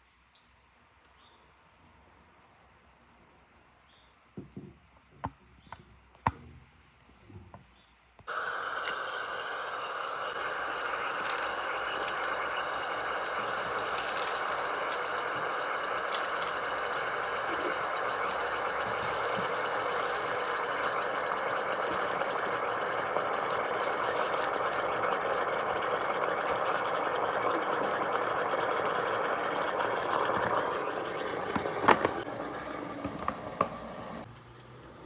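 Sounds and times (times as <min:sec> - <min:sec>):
machine whirring: 0:08.3 - 0:34.3.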